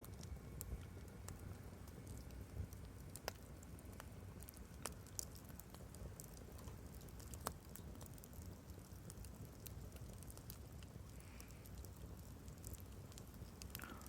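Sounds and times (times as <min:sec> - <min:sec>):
low fire rumble: 0:00.0 - 0:14.0
wood fire crackling and popping: 0:00.0 - 0:14.0.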